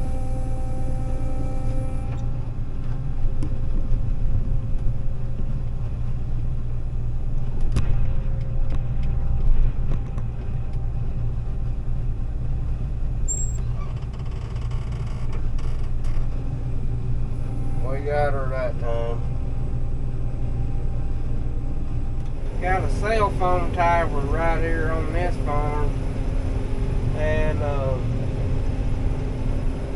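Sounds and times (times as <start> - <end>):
faint high whine: 0.0 - 2.3, 17.3 - 19.3
combine engine drone: 0.0 - 29.9.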